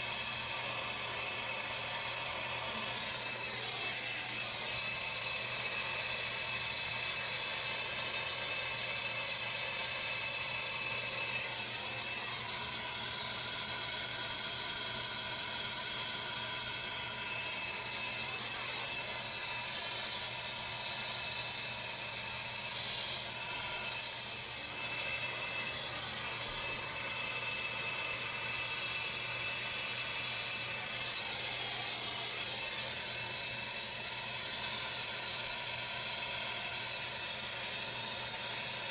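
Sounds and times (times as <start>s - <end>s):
torch flame hissing: 16.8s - 27.8s.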